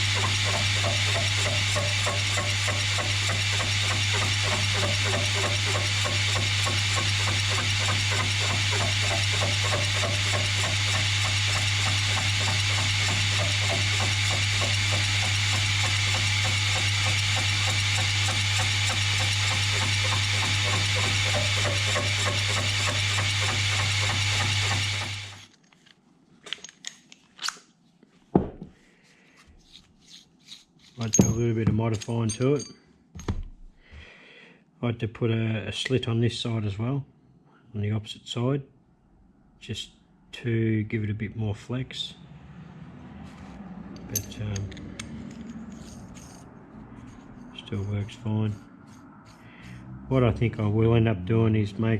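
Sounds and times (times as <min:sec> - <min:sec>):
machine humming: 0:00.0 - 0:25.4.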